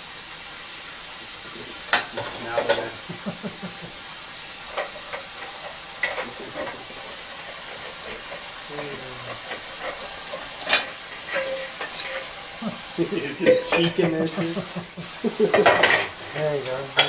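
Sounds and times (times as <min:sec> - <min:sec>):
steady hiss: 0:00.0 - 0:17.0
dishes clinking in rack: 0:01.9 - 0:03.0, 0:08.1 - 0:12.4, 0:13.4 - 0:14.5, 0:15.4 - 0:17.0.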